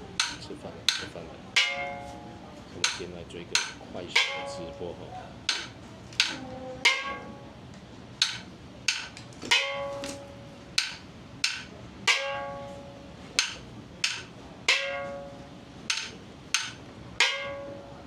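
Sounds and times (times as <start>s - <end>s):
ringing percussion strike: 1.6s - 3.0s, 4.0s - 5.6s, 6.2s - 7.6s, 9.5s - 10.6s, 11.4s - 16.2s, 17.2s - 18.0s.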